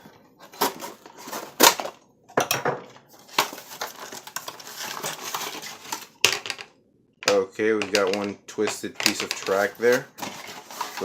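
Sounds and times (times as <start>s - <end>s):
rustling and crinkling: 0.0s - 2.0s, 3.0s - 6.7s, 7.8s - 11.0s
plastic toy pieces clattering: 3.4s - 11.0s.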